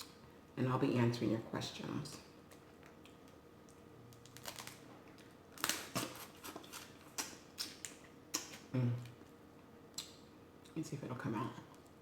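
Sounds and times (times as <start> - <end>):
shellfish shells cracking: 4.1 - 8.5.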